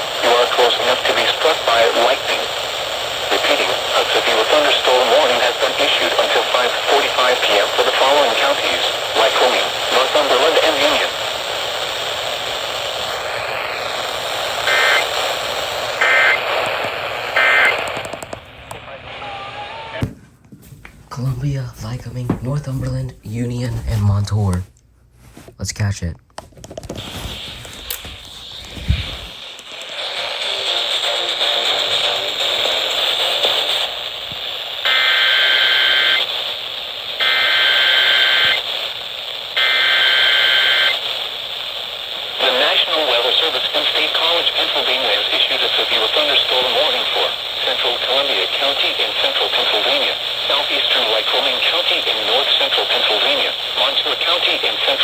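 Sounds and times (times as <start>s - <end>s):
radio static hiss: 0.0s - 20.2s, 21.1s - 55.0s
two-tone data bursts: 16.0s - 16.7s, 17.4s - 18.0s, 37.2s - 38.6s.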